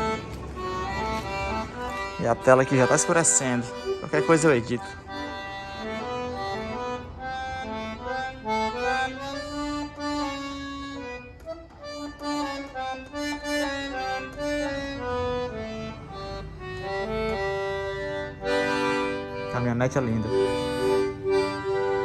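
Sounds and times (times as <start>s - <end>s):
accordion melody: 0.0s - 22.0s.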